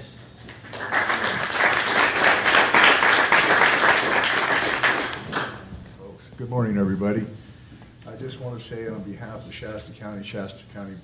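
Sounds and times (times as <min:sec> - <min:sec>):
small audience applauding: 0:00.4 - 0:05.7.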